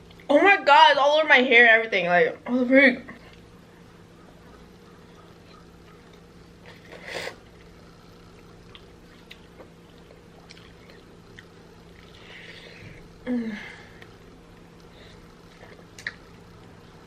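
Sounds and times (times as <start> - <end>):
person chewing quietly: 3.2 - 13.2, 13.9 - 17.0.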